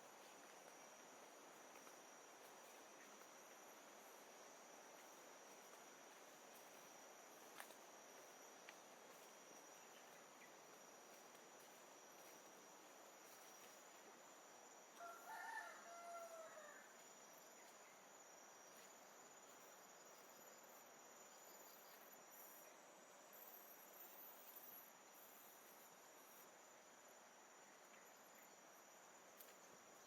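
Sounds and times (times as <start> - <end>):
high insect whine: 0.0 - 30.0
rooster crowing: 15.0 - 17.0.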